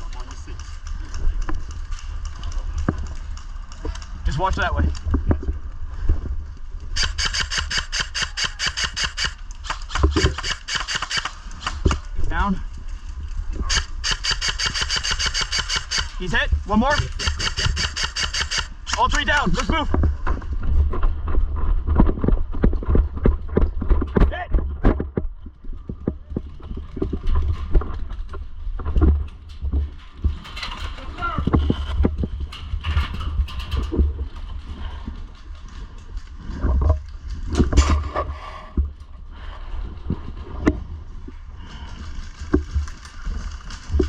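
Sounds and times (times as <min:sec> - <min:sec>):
wind rumble on microphone: 0:00.0 - 0:07.2, 0:19.4 - 0:44.0
airsoft gun firing bursts: 0:07.0 - 0:12.1, 0:13.7 - 0:16.3, 0:16.9 - 0:19.3.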